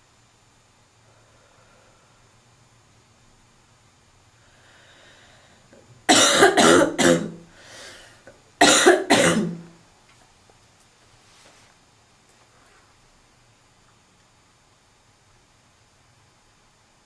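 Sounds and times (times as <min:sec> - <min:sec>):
person breathing in: 0:04.4 - 0:05.7, 0:07.5 - 0:08.3
harsh smoker's cough: 0:06.1 - 0:07.4, 0:08.6 - 0:09.7.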